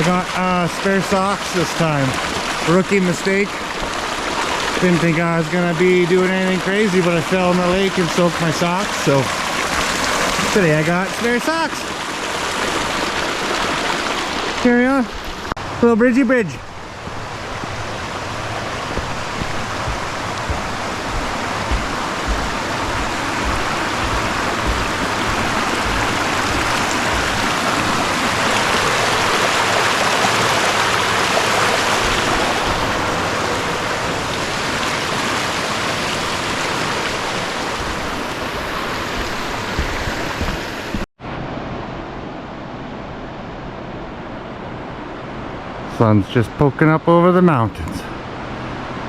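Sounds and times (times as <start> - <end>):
mountain creek rushing: 0.0 - 41.1
dull low thumps: 16.6 - 29.3, 31.8 - 34.0, 37.4 - 41.1.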